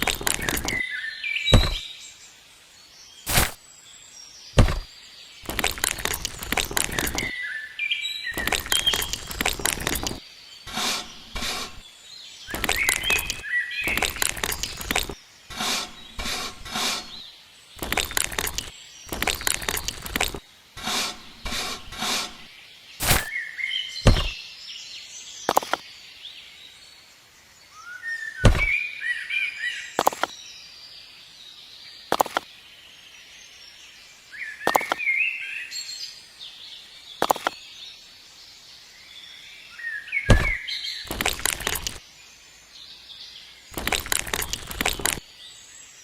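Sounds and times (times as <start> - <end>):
birds chirping: 0.0 - 2.2, 4.2 - 24.6, 28.0 - 30.5, 39.1 - 45.7.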